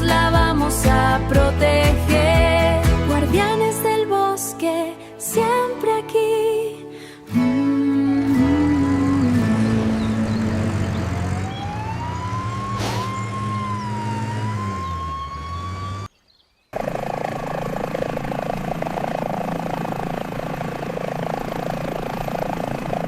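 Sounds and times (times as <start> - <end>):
engine running: 8.0 - 16.1, 16.8 - 23.0
emergency siren wailing: 8.1 - 16.1.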